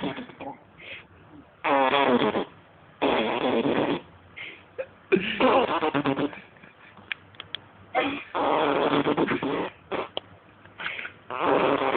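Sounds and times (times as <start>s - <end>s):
baby blowing raspberries: 1.6s - 4.1s, 5.4s - 6.4s, 8.0s - 10.2s, 10.9s - 11.9s.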